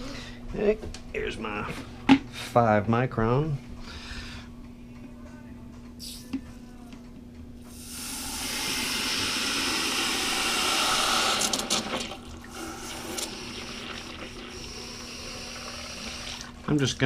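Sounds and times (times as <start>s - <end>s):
faint steady hum: 0.0s - 17.0s
water pouring into housing: 7.8s - 16.7s.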